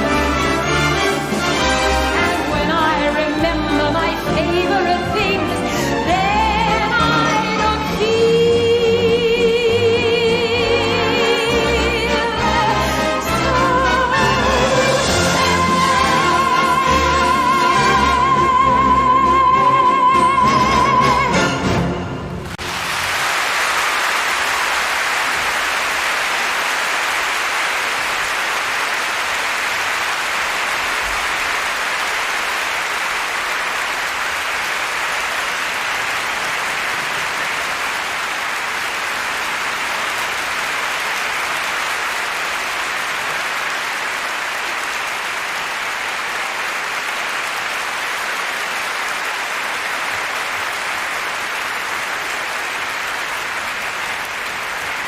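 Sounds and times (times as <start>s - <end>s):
audience applauding: 0.0s - 8.1s, 22.3s - 55.0s.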